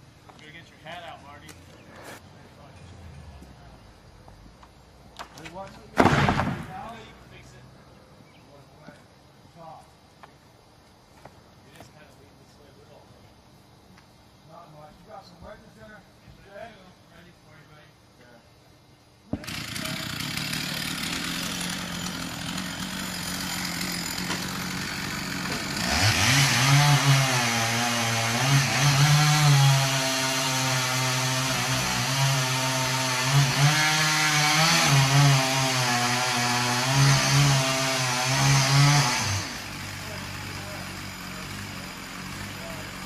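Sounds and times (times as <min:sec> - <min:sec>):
chainsaw cutting tree: 0:19.3 - 0:43.0.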